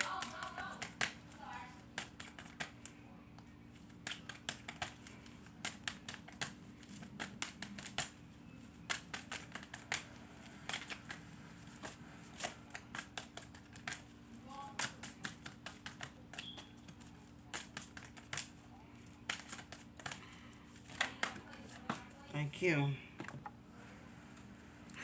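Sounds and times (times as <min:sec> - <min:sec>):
cards being shuffled: 0:00.0 - 0:22.3.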